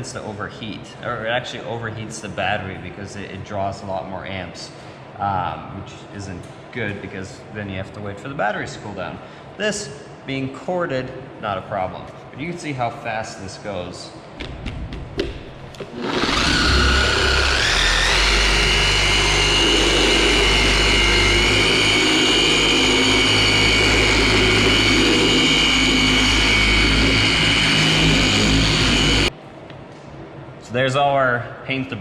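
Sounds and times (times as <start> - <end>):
polisher whine: 15.8 - 29.3.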